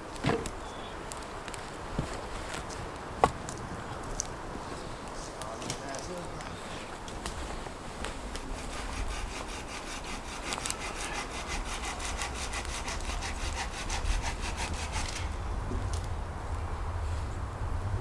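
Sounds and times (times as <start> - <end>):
hand saw cutting wood: 8.0 - 15.5.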